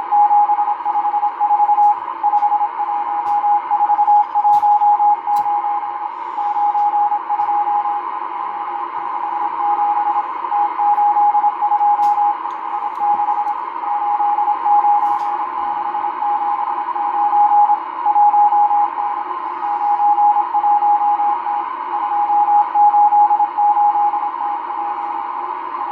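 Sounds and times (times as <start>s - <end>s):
morse code tone: 0.0s - 16.6s.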